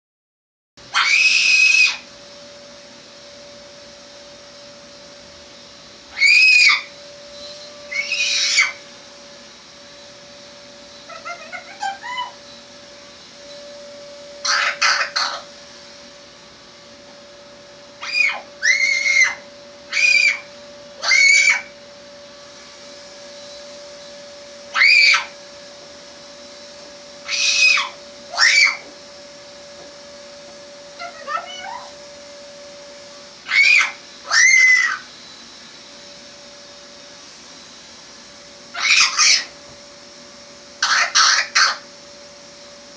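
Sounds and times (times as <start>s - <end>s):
steady hum: 0.8s - 42.9s
high-pitched squeal: 6.1s - 8.9s, 17.9s - 21.8s, 22.5s - 25.8s, 26.4s - 29.4s.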